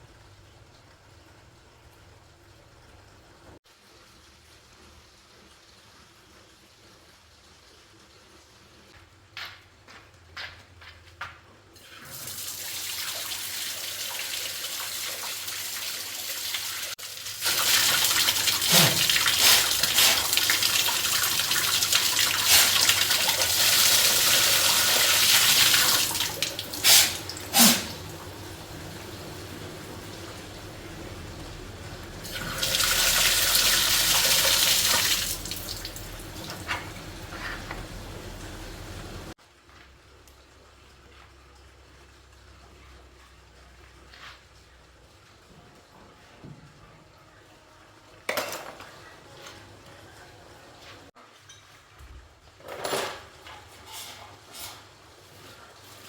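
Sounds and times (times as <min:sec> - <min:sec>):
water spraying hiss: 0:17.4 - 0:39.4.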